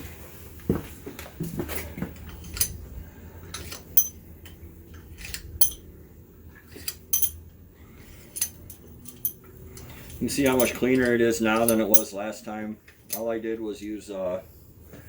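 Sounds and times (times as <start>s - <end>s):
metal tools clinking: 2.3s - 2.8s, 3.6s - 4.2s, 5.2s - 5.8s, 6.8s - 7.4s, 8.3s - 9.4s, 10.4s - 12.2s, 13.1s - 13.3s.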